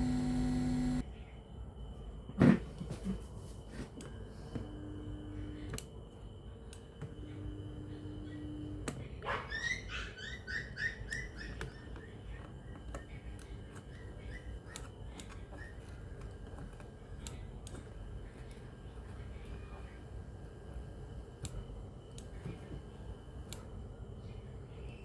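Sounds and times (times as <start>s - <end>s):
low hum: 0.0s - 1.0s
small animal chirping: 9.5s - 12.4s.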